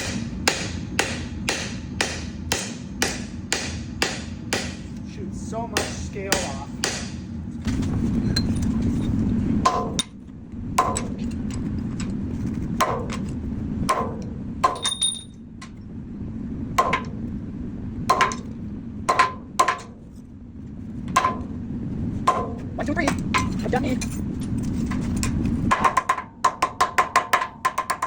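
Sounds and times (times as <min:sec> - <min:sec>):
hammer striking hot steel: 0:00.0 - 0:04.9, 0:05.7 - 0:07.3, 0:09.6 - 0:10.2, 0:13.9 - 0:15.3, 0:16.8 - 0:17.2, 0:18.1 - 0:18.5, 0:19.1 - 0:19.9, 0:21.2 - 0:21.5
low rumble: 0:04.4 - 0:25.8.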